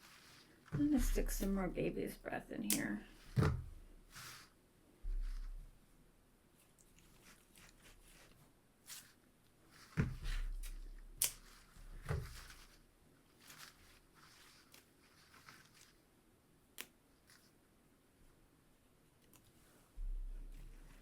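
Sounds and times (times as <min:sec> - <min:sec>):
dried flower stems rustling: 0:00.0 - 0:05.7, 0:06.6 - 0:16.1
soft thumps: 0:05.0 - 0:05.7.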